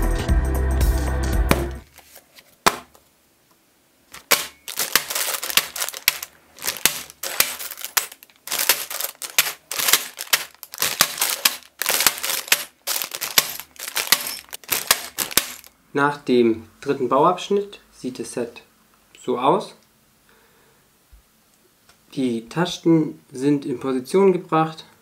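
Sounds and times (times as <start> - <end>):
plastic bag crinkling: 4.1 - 15.7
small plastic bricks clattering: 4.1 - 15.7.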